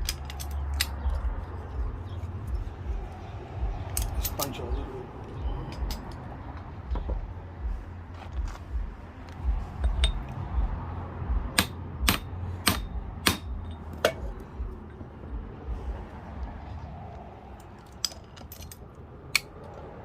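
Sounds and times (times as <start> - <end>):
hammer striking metal punch: 11.5 - 14.4.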